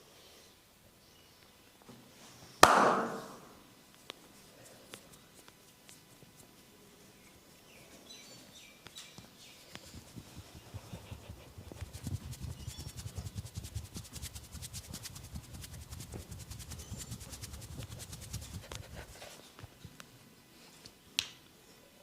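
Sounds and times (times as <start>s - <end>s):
loud sharp smack: 2.6s - 3.6s.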